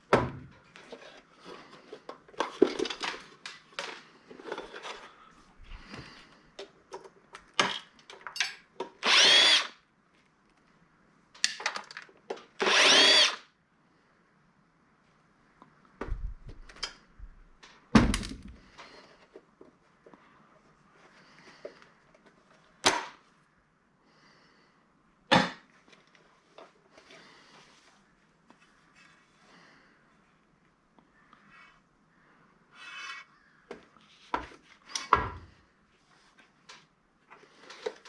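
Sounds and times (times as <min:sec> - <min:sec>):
clicks and knocks of parts: 0:06.6 - 0:09.0, 0:11.4 - 0:12.6
power drill motor whine: 0:09.0 - 0:09.8, 0:12.6 - 0:13.4.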